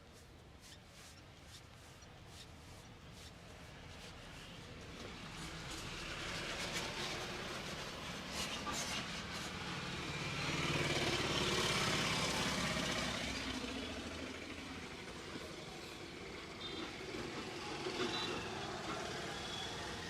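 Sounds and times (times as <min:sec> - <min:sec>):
vehicle engine passing: 0:09.8 - 0:15.5.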